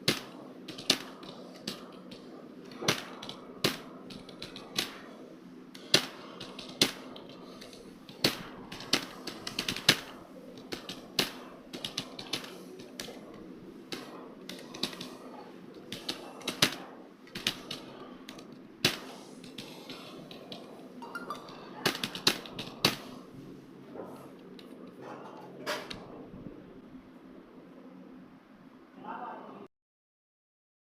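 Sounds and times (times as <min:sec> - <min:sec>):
keyboard typing: 0:00.0 - 0:23.4
faint steady hum: 0:00.0 - 0:29.7.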